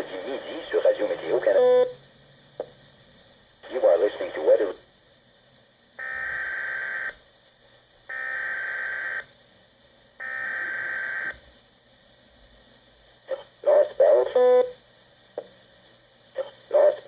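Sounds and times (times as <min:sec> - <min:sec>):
screechy modem-like data bursts: 0:10.2 - 0:11.4.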